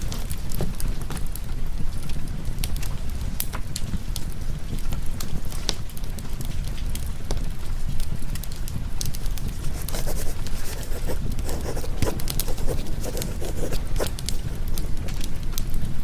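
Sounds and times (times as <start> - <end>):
low rumble of rain: 0.0 - 9.2.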